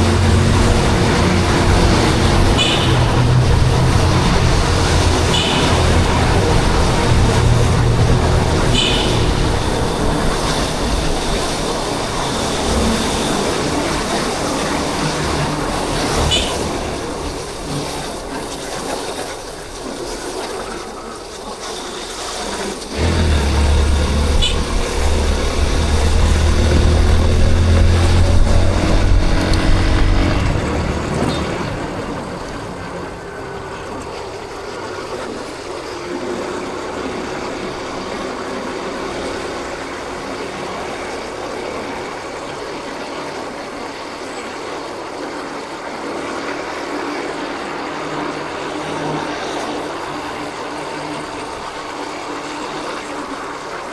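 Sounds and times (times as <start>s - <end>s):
motorcycle engine running: 0.0s - 17.8s, 22.9s - 32.5s
road and wind noise: 0.0s - 53.9s.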